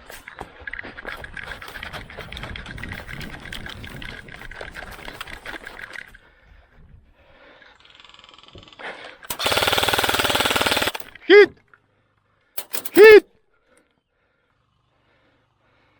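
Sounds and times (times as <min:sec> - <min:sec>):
airsoft gun full-auto burst: 0:09.3 - 0:11.2, 0:12.6 - 0:13.2.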